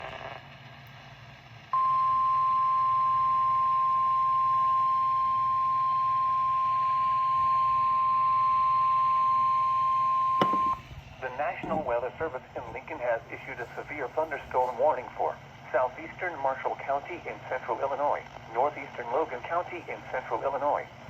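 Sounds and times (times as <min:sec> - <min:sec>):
steady alarm tone: 0:01.8 - 0:10.8
faint radio hiss: 0:10.4 - 0:21.0.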